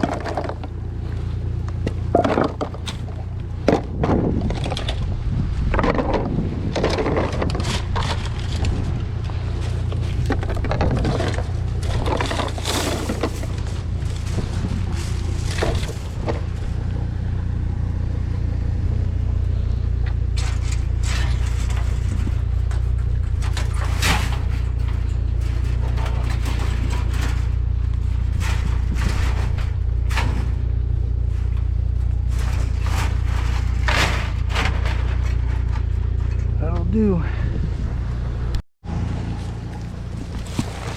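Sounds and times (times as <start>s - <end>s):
knocks and rattles: 0.0s - 36.9s
vehicle engine rumbling: 0.0s - 40.9s.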